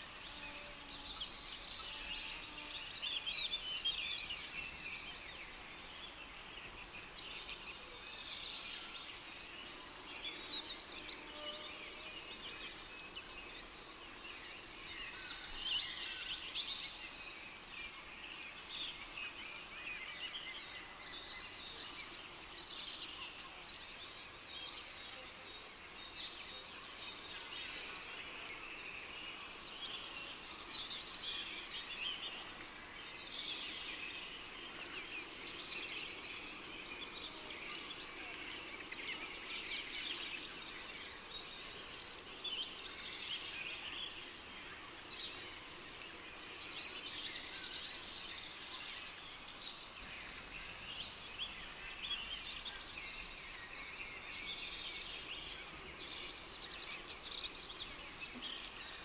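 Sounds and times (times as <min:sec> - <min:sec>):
cricket chirping: 0:17.4 - 0:59.0
insects chirping: 0:17.4 - 0:59.0.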